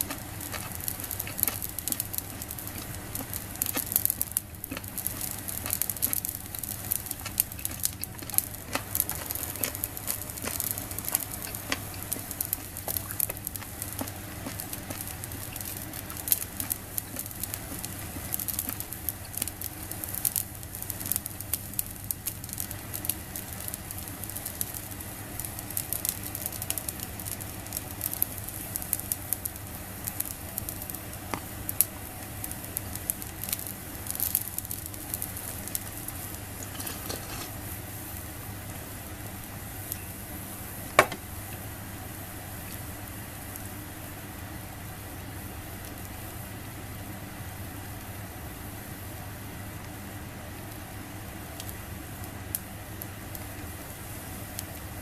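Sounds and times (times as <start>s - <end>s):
fire pops and crackles: 0.0s - 38.4s, 40.8s - 41.7s, 50.7s - 55.0s
squid sizzling on a grill: 0.0s - 55.0s.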